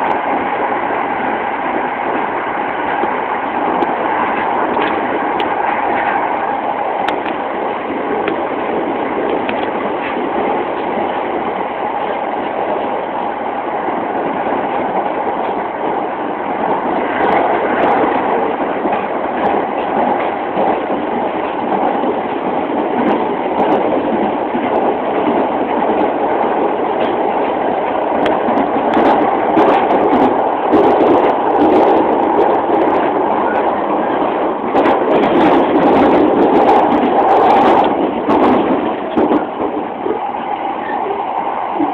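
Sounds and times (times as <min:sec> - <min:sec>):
train wheel and rail noise: 0:00.0 - 0:41.9
sharp clicks and clatter: 0:02.9 - 0:06.2, 0:07.0 - 0:12.9, 0:16.6 - 0:40.2.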